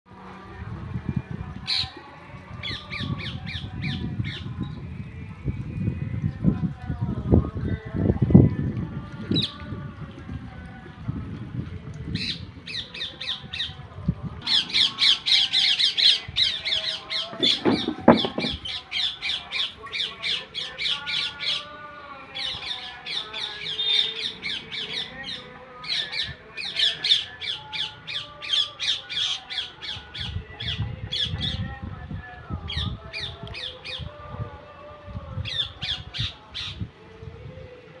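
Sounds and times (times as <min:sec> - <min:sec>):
parrot squawking: 0:14.5 - 0:21.7.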